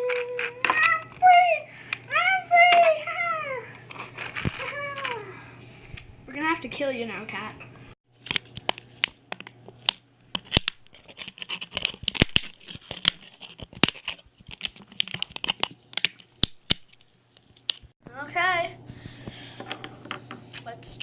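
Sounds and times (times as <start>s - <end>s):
plastic clicking and scraping: 8.2s - 17.9s.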